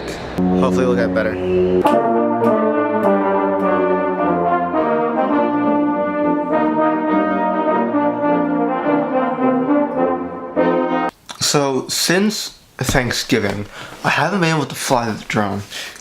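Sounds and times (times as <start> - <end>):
sharp percussion strokes: 0.4 - 6.6
school band playing brass chords: 0.4 - 11.1.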